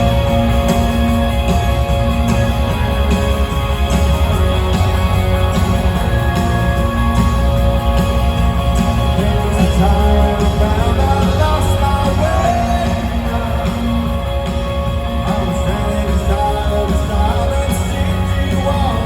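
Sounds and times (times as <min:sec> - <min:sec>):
guitar chords: 0:00.0 - 0:19.0
live rock band playing: 0:00.0 - 0:19.0
person singing: 0:08.6 - 0:19.0.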